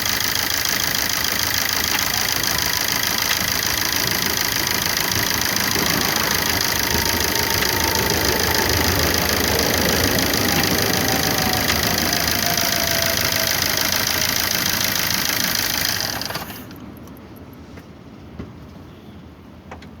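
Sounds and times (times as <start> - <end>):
diesel engine clattering: 0.0 - 17.4
small clicks: 0.0 - 17.4.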